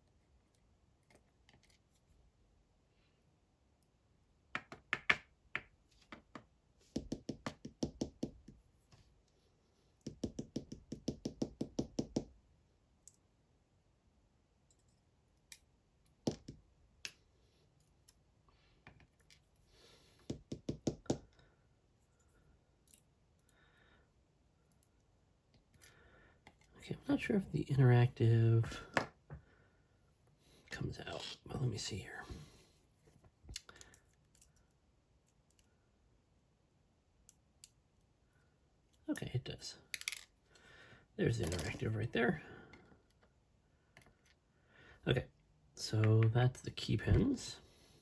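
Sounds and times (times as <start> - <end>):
metal lock parts tapping: 39.9 - 40.3.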